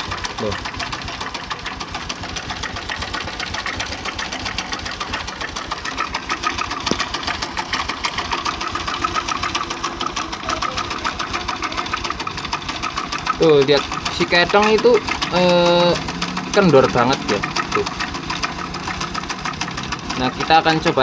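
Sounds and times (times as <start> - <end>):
motorcycle engine idling clatter: 0.0 - 21.0.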